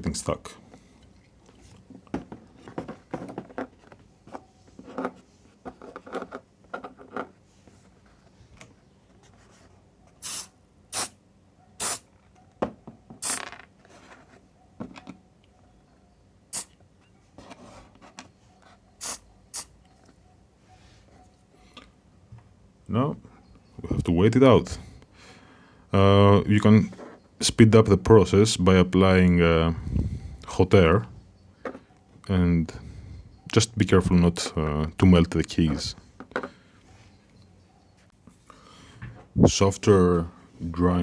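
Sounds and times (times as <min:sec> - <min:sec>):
handling clatter and rustling: 0:01.3 - 0:09.8
aerosol spray hisses: 0:10.2 - 0:11.2, 0:11.8 - 0:12.0, 0:19.0 - 0:19.7.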